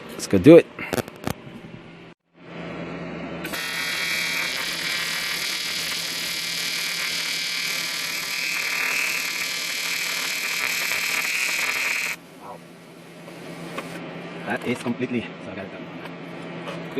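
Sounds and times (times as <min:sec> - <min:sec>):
power tool grinding metal: 0:03.5 - 0:12.2.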